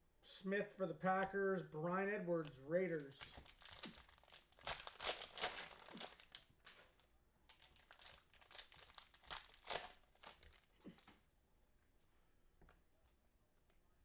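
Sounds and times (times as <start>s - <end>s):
cellophane wrappers crinkling: 2.4s - 11.1s.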